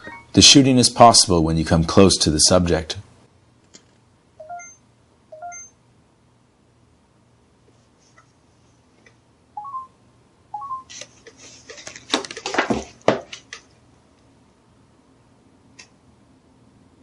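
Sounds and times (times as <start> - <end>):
rising electronic beeps: 5.4 - 5.8, 9.6 - 10.0, 10.6 - 10.9.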